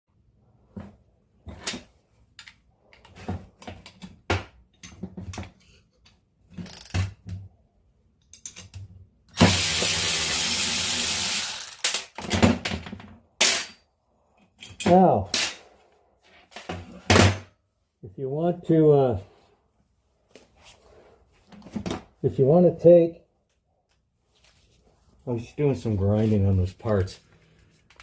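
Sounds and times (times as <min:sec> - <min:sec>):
tools and metal parts clanking: 0:01.5 - 0:07.4, 0:08.2 - 0:09.0, 0:11.8 - 0:15.8
power tool running: 0:09.4 - 0:11.8.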